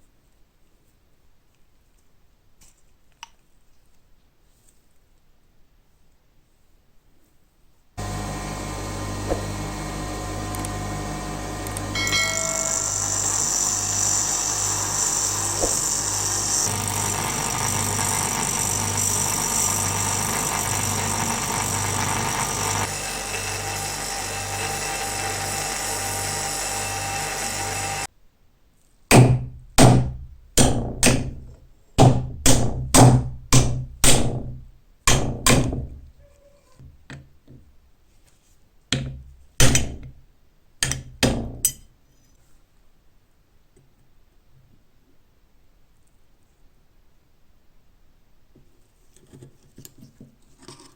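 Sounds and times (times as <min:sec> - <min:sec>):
hammer blows: 0:08.0 - 0:28.0
bench grinder grinding metal: 0:08.0 - 0:28.1.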